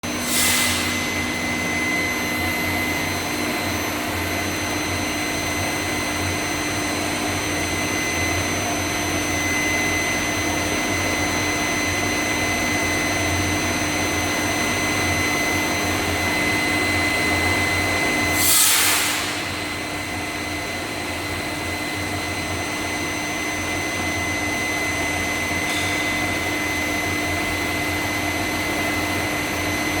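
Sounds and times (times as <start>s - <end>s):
furnace mechanical drone: 0.0s - 30.0s
high steady whine: 0.0s - 30.0s
sharp hiss: 18.4s - 19.6s.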